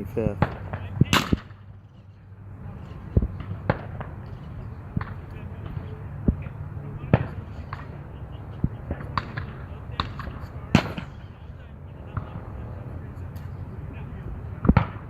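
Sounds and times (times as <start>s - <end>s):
faint background voices: 0.0s - 15.0s
steady low hum: 0.0s - 15.0s
shotgun shots: 0.4s - 1.6s, 10.7s - 11.2s.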